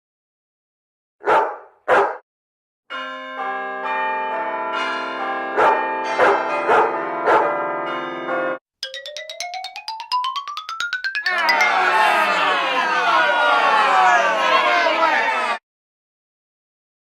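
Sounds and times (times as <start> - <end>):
short dog-like barks: 1.2 - 2.2
rapid clicking tone rising: 8.8 - 11.4
bell-like chime tones: 8.8 - 12.9.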